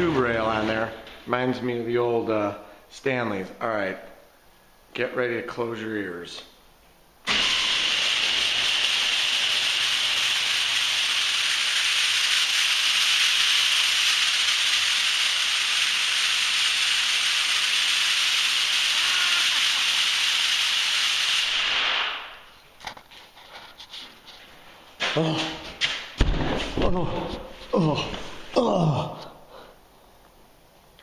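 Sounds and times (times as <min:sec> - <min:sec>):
garage door opener screeching: 0:07.3 - 0:20.8.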